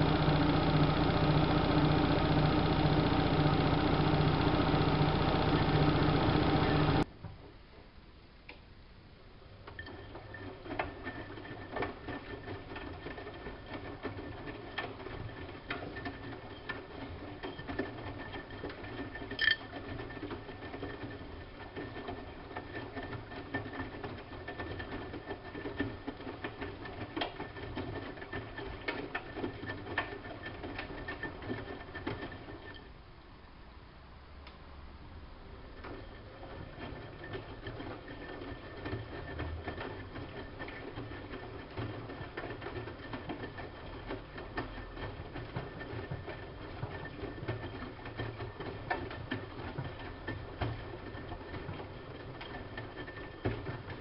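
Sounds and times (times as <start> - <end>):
washing machine running: 0.0 - 7.1.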